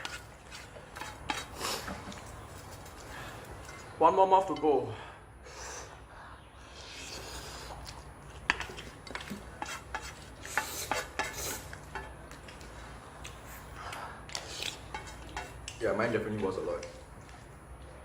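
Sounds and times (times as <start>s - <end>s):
utensils clinking against a bowl: 8.5s - 12.2s, 14.3s - 17.0s.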